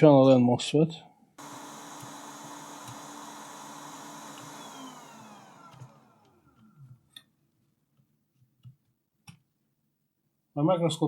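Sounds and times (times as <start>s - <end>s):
blower whine winding down: 1.4s - 6.7s
electric blower running: 1.4s - 6.8s.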